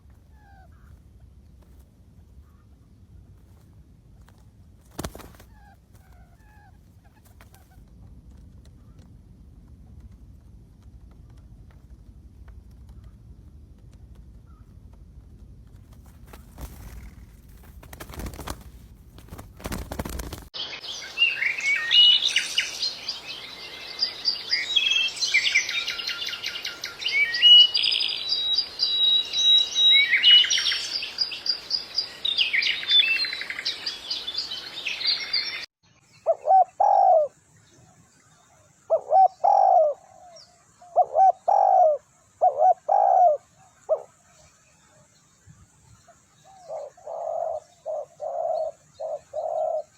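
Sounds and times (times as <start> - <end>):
wingbeats rustling: 0.0 - 20.6
songbirds chirping and twittering: 16.3 - 49.9.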